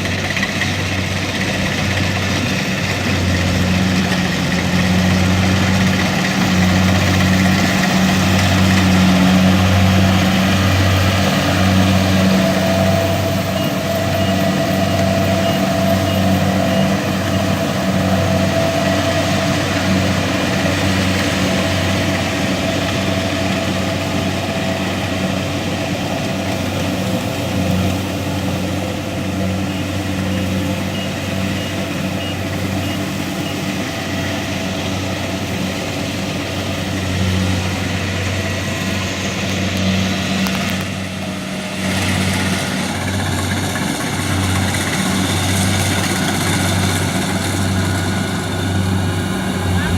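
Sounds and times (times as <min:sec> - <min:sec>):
combine harvester engine droning: 0:00.0 - 0:49.9
threshing machinery rattle: 0:00.0 - 0:49.9
faint high beep: 0:12.8 - 0:18.3.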